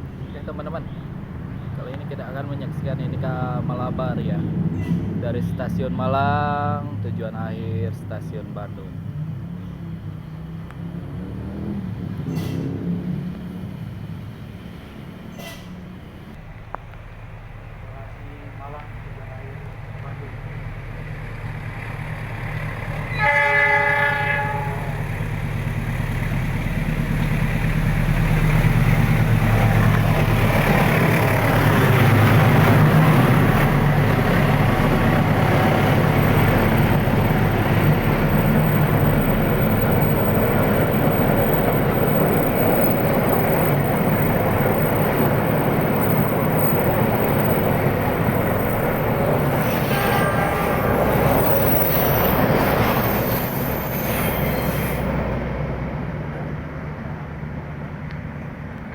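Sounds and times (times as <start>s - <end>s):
train rumbling past on rails: 0.0s - 58.9s
train horn: 23.0s - 25.1s, 49.6s - 53.4s.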